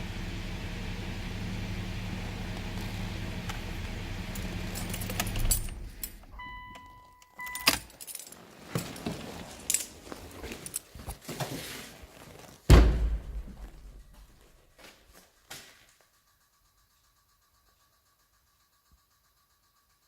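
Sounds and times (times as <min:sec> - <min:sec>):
car engine idling: 0:00.0 - 0:07.0.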